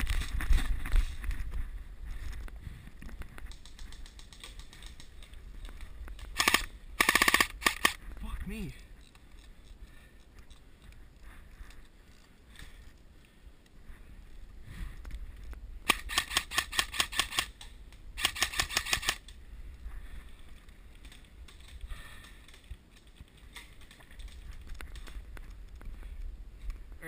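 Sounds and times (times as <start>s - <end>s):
airsoft gun automatic bursts: 6.4s - 8.0s, 15.9s - 17.5s, 18.2s - 19.2s.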